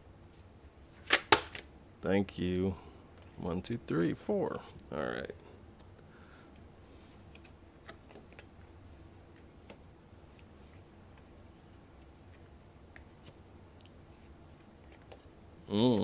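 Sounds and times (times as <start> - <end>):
low steady hum: 0.0 - 16.0
cards clicking and tapping: 1.0 - 1.7.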